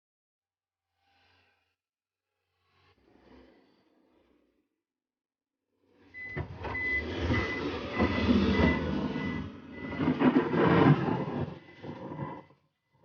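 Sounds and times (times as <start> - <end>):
reversing alarm beeping: 6.2 - 13.0
diesel engine running hard: 6.6 - 10.7.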